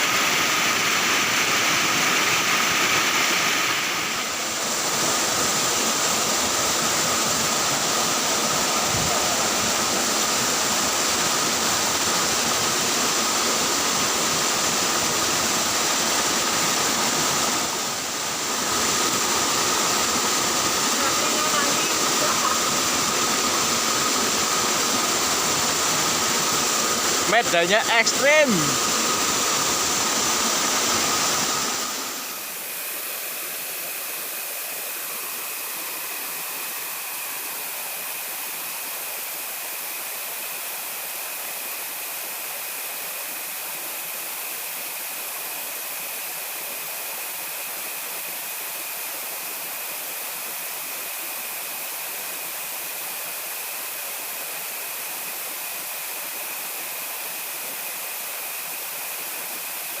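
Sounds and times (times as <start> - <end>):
steady rushing outdoor noise: 0.0 - 37.6.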